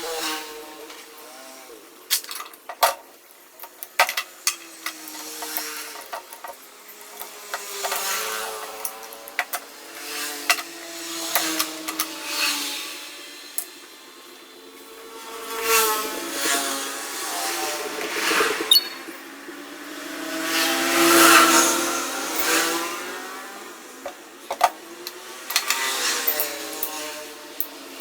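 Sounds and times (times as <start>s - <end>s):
metal tools clinking: 18.7s - 19.4s.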